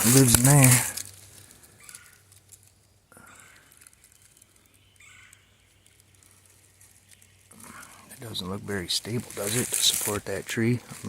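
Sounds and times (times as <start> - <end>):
faint bird calls: 1.3 - 9.7.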